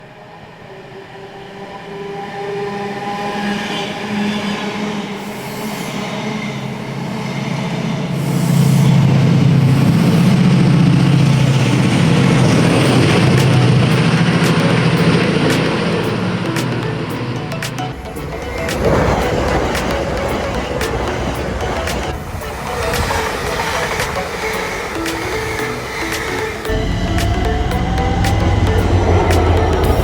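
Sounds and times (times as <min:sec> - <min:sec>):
diesel locomotive engine running: 0:07.7 - 0:30.0.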